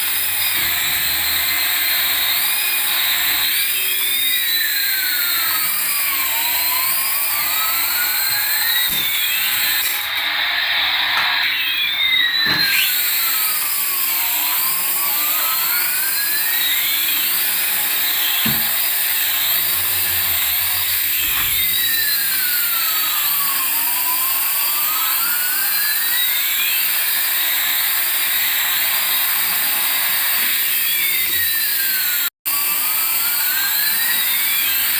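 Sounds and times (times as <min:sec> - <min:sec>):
toy jet engine hum: 0:00.0 - 0:34.9
siren-like sweeping tone: 0:00.1 - 0:23.3.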